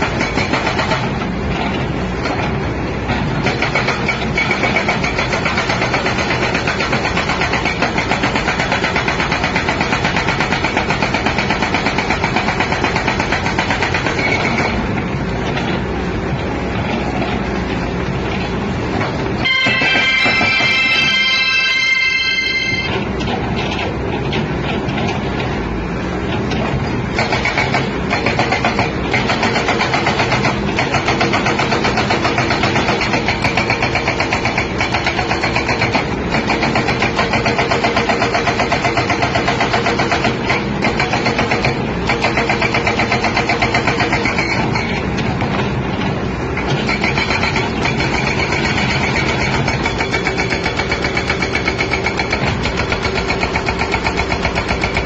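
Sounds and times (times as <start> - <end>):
diesel engine running: 0.0 - 55.0
hydraulic breaker hammering: 3.1 - 14.9, 19.4 - 21.3, 27.1 - 45.7, 46.6 - 55.0.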